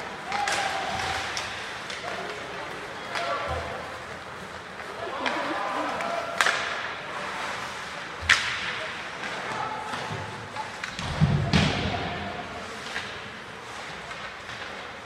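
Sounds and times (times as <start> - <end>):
ice hockey puck and stick cracks: 6.3 - 7.0.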